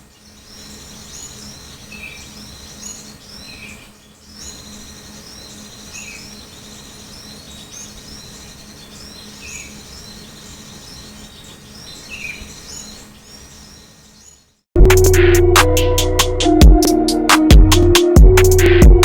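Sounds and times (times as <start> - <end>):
small birds chirping: 0.0 - 14.7.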